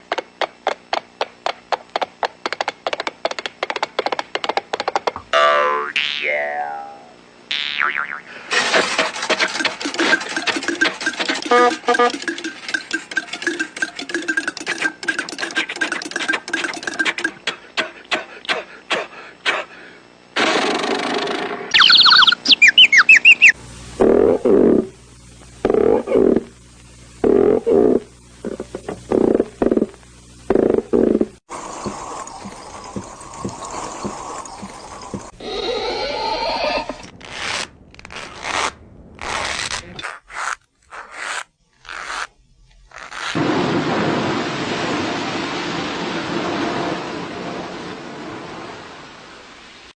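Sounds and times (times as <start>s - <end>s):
rasping scraping strokes: 8.5s - 17.2s
rapid mechanical clicking: 8.5s - 18.2s.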